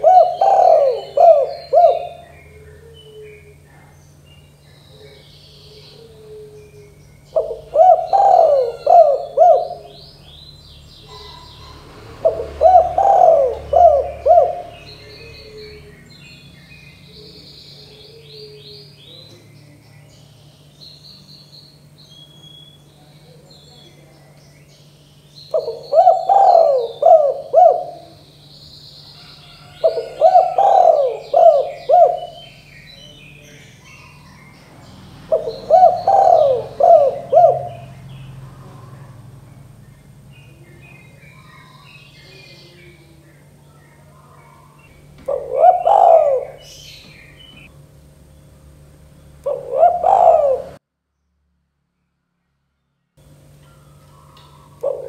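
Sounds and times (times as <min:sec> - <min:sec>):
dove cooing: 0:00.0 - 0:19.8, 0:25.5 - 0:28.4, 0:29.0 - 0:39.8, 0:40.4 - 0:47.7, 0:49.4 - 0:50.8, 0:53.8 - 0:55.0
small birds chirping faintly: 0:00.0 - 0:55.0.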